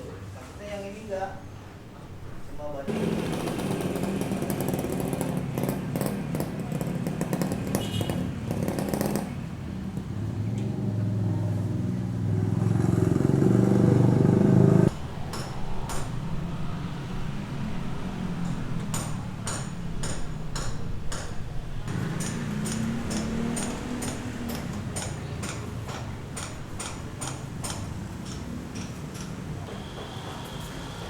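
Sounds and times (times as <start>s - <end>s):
engine running: 2.9s - 15.2s, 21.6s - 27.0s.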